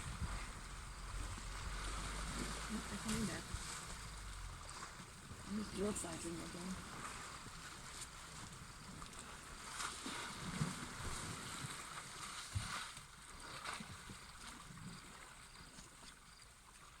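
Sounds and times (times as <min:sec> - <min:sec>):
soft low thumps: 0:00.0 - 0:09.0
water sloshing and splashing: 0:00.0 - 0:17.0.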